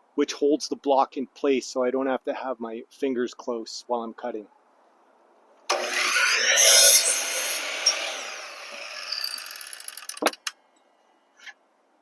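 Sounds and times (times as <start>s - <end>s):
miter saw cutting wood: 5.7s - 10.4s
saw blade spinning down with rattle: 5.7s - 10.5s.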